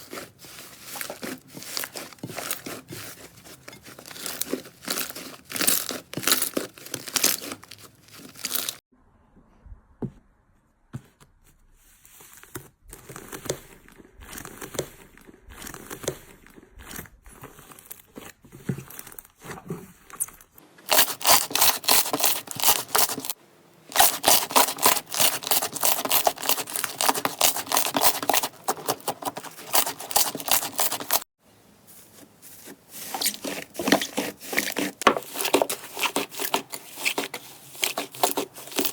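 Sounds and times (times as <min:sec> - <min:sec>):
slime crackling and crinkling: 0:00.0 - 0:08.8, 0:20.9 - 0:31.3, 0:32.0 - 0:38.9.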